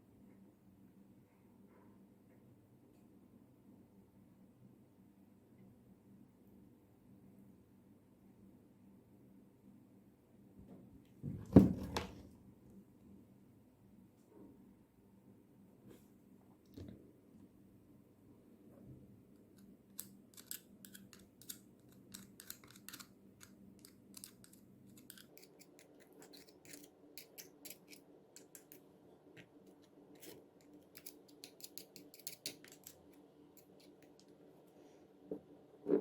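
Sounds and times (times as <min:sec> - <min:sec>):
small parts clicking and tapping: 0:19.4 - 0:34.4.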